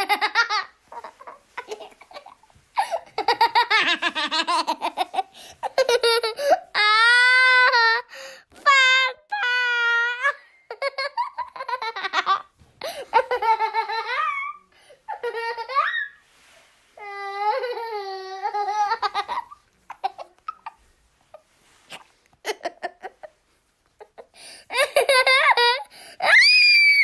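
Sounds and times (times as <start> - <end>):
little boy laughing: 0.0 - 8.1, 10.1 - 16.2, 17.4 - 20.8, 22.4 - 23.4, 24.0 - 26.6.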